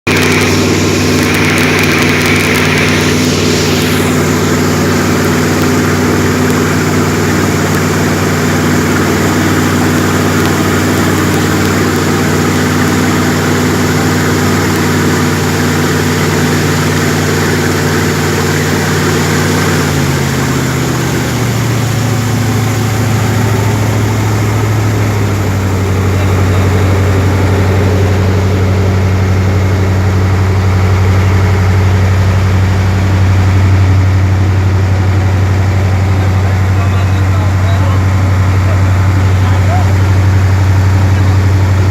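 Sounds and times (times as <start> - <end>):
boat engine running: 0.0 - 41.9.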